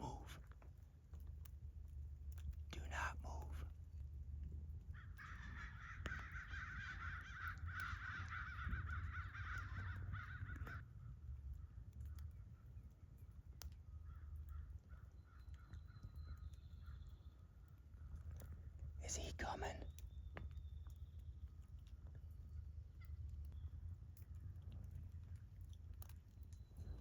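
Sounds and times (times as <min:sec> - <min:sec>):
harsh raspy bird calling: 0:05.0 - 0:10.8.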